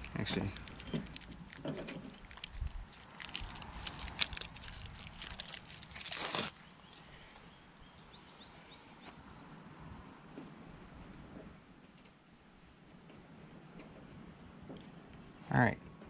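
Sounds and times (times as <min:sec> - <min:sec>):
clicks and rustling of plastic parts: 0:00.0 - 0:06.5.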